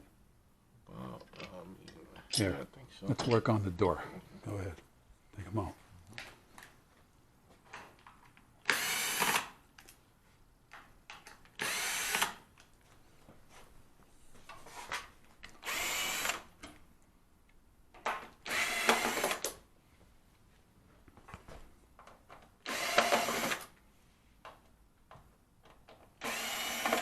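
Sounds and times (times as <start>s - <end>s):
cordless power driver running: 22.7s - 23.6s, 26.2s - 27.0s.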